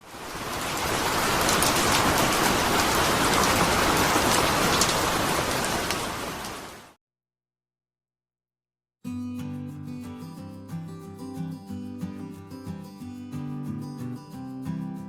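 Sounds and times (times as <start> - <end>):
rain falling: 0.0 - 7.0.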